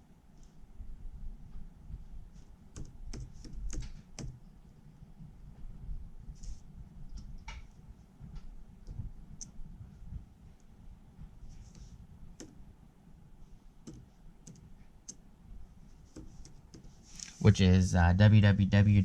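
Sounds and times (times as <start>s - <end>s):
low background hum: 0.0s - 19.0s
keyboard keys clicking: 2.7s - 4.4s, 12.4s - 12.6s, 13.8s - 15.2s.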